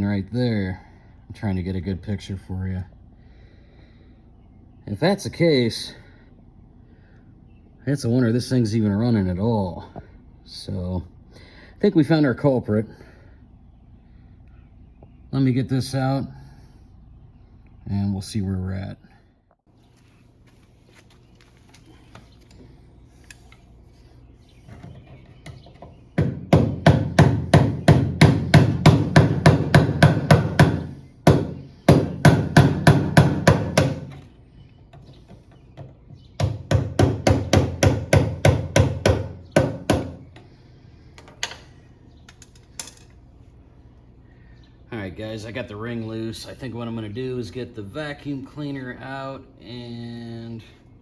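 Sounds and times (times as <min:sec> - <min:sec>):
rapid hammer blows on metal: 0:26.2 - 0:34.2.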